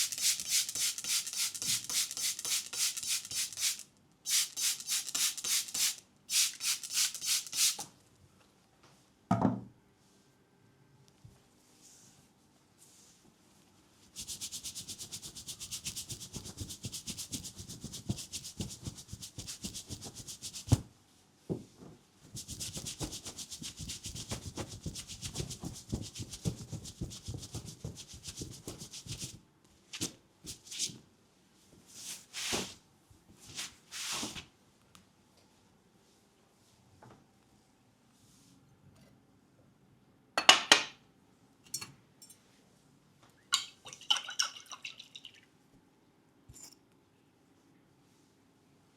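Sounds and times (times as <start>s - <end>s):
massage rubbing strokes: 22.4s - 29.4s.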